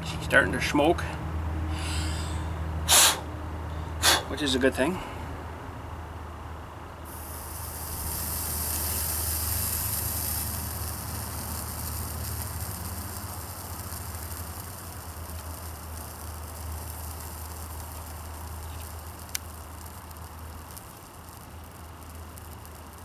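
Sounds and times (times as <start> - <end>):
flux sizzling: 7.1 - 23.0
soldering gun humming: 7.1 - 23.0.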